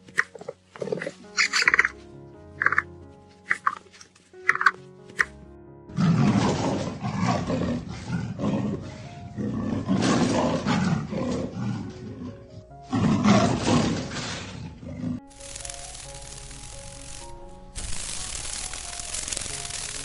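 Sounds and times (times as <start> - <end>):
quiet background music: 0.0 - 20.0
large animal roaring: 6.0 - 15.2.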